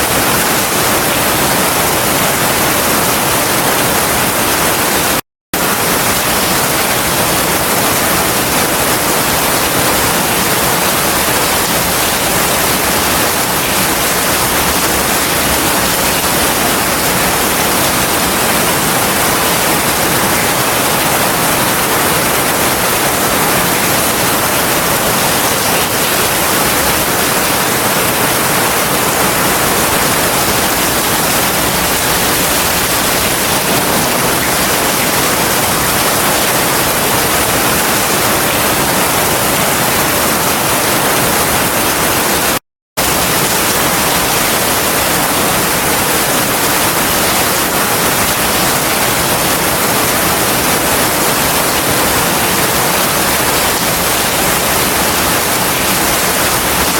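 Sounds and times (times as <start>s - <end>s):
heavy rain in forest: 43.0s - 56.9s.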